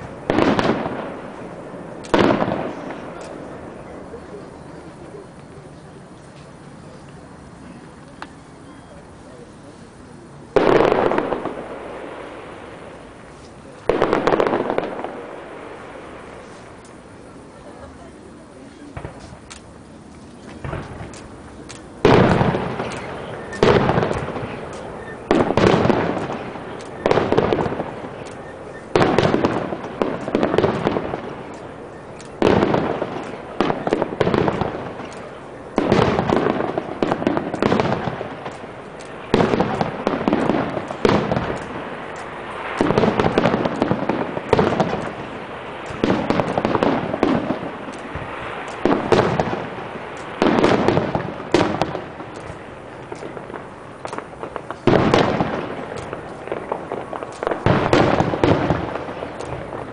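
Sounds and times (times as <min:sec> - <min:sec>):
fireworks bursting with bangs: 0:00.0 - 0:59.9.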